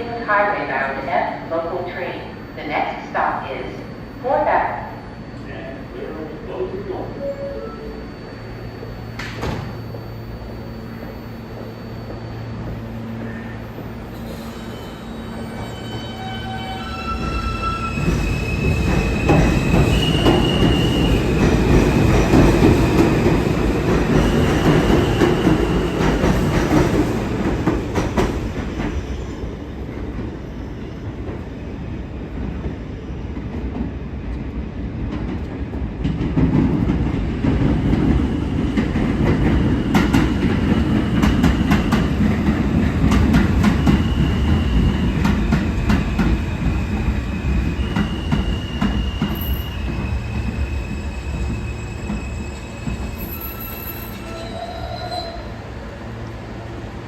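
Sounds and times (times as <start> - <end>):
subway train rumble: 0.0 - 57.0
high-pitched wheel squeal: 47.8 - 55.6.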